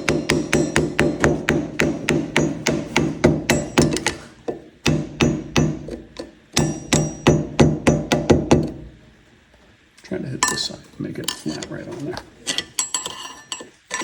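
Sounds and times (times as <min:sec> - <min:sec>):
hammer tapping metal: 0:00.0 - 0:09.0, 0:10.4 - 0:11.7, 0:12.5 - 0:14.0.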